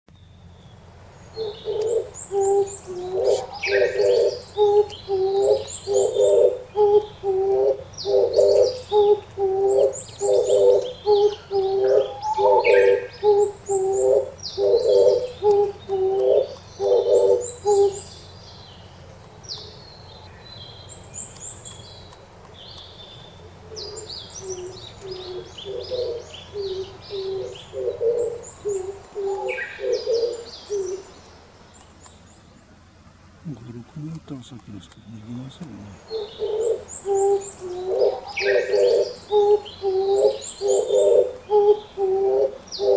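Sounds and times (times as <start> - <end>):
small birds chirping: 0.1 - 42.9
dove cooing: 1.3 - 18.6, 23.1 - 31.4, 35.1 - 42.9.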